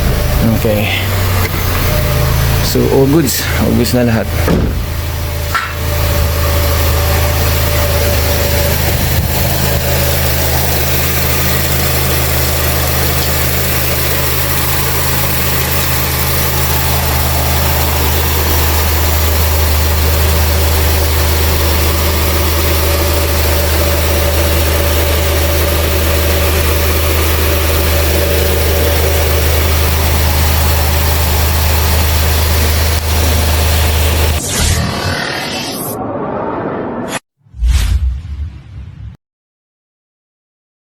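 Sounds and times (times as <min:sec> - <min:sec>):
car engine idling: 0:00.0 - 0:35.5.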